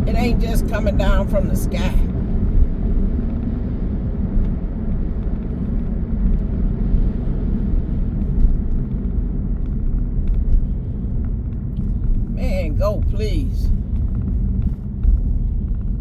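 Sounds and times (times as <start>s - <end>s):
car rumble in strong wind: 0.0s - 16.0s.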